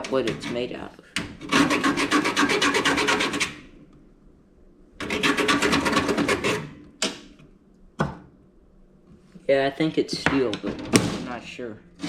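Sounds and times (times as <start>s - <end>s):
metal scraping rasp: 0.0s - 3.7s, 5.0s - 6.8s.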